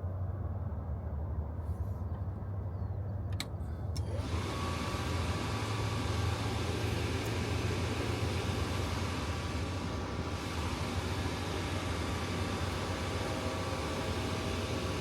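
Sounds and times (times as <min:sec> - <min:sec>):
furnace blower whirring: 0:04.0 - 0:15.0.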